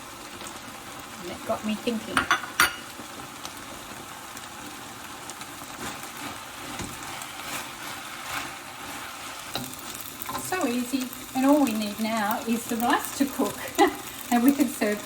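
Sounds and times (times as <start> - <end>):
food sizzling in a wok: 0.0 - 15.0
faint spatula scrapes: 5.7 - 10.4.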